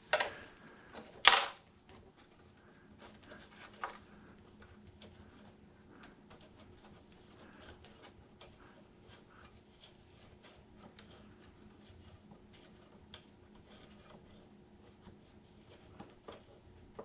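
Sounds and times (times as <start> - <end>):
faint steady hum: 0.0 - 17.0
hand tools clicking and tapping: 0.1 - 0.4.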